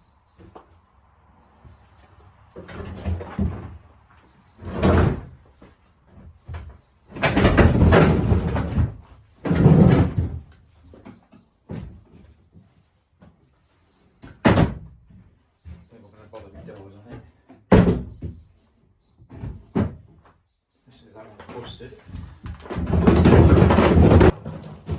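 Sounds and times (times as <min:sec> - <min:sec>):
panels and doors banging: 0:04.5 - 0:05.4, 0:06.5 - 0:10.5, 0:14.2 - 0:14.9, 0:17.7 - 0:18.4, 0:22.0 - 0:24.9
wooden cupboards scraping: 0:07.1 - 0:10.4, 0:22.1 - 0:24.9.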